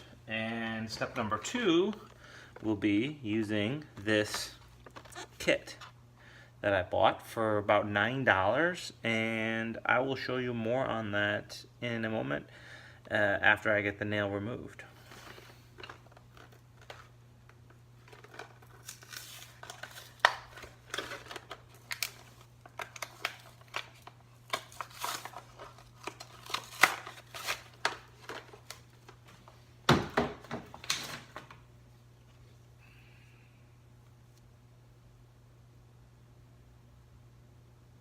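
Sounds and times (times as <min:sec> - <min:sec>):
plastic packaging crinkling: 0:15.0 - 0:29.5.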